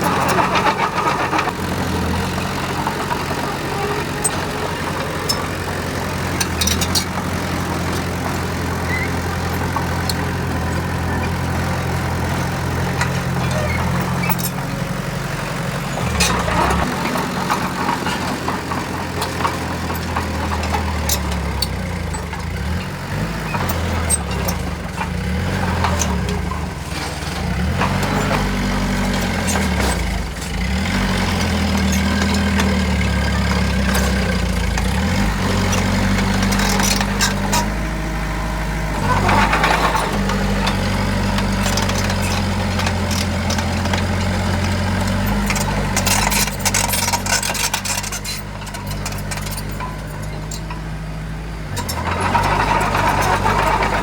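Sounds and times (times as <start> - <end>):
heavy diesel engine running: 0.0 - 54.0.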